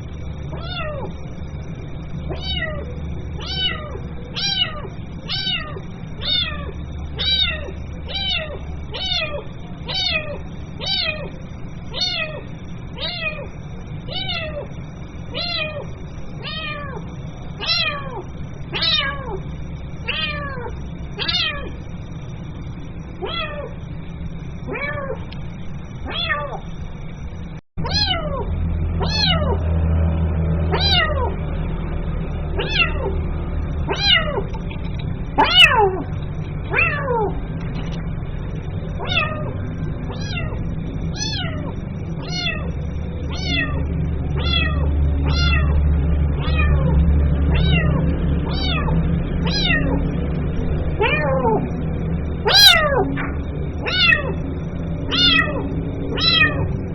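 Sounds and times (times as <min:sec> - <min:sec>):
low hum: 0:00.0 - 0:56.9
kitten meowing: 0:00.5 - 0:01.2, 0:02.3 - 0:14.7, 0:15.3 - 0:17.0, 0:17.6 - 0:19.4, 0:20.0 - 0:21.7, 0:23.2 - 0:23.7, 0:24.6 - 0:25.2, 0:26.0 - 0:26.6, 0:27.8 - 0:29.6, 0:30.7 - 0:31.3, 0:32.6 - 0:33.2, 0:33.9 - 0:34.6, 0:35.4 - 0:37.4, 0:39.0 - 0:45.8, 0:46.4 - 0:46.9, 0:47.5 - 0:50.0, 0:50.9 - 0:51.7, 0:52.4 - 0:54.5, 0:55.1 - 0:56.7.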